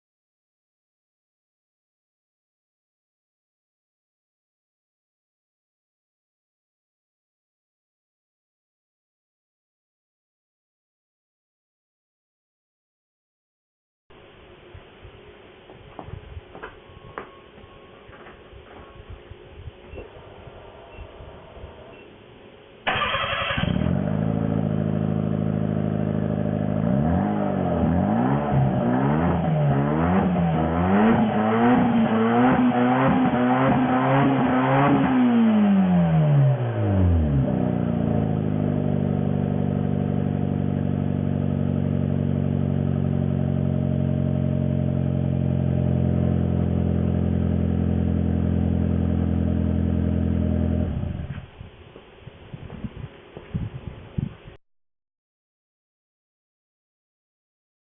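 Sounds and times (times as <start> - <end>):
car engine idling and revving: 23.0 - 51.5.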